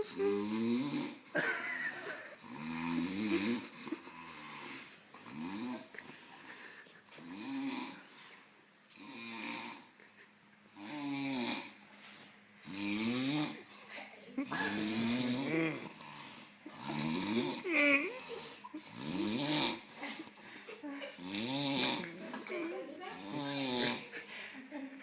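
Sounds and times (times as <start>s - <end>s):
person snoring heavily: 0.0s - 1.2s, 2.4s - 5.9s, 7.2s - 8.0s, 9.0s - 9.8s, 10.8s - 11.8s, 12.6s - 13.7s, 14.4s - 20.4s, 21.1s - 22.1s, 23.2s - 24.1s.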